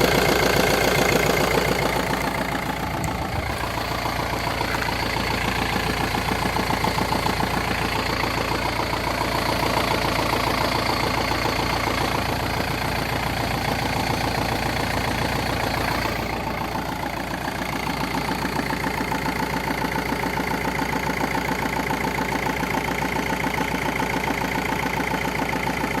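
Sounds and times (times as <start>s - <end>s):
diesel engine idling: 0.0s - 26.0s.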